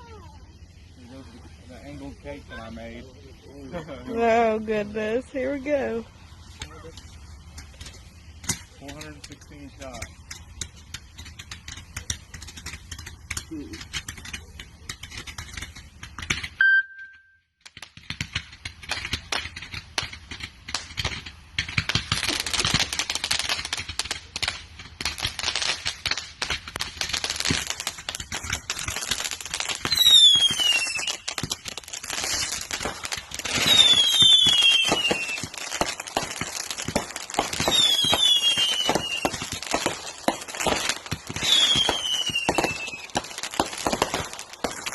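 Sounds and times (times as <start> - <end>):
falling firework whistles: 0.0 - 4.1, 6.2 - 44.9
firework shots and crackles: 0.0 - 16.7, 17.6 - 44.9
short beep: 16.6 - 17.5.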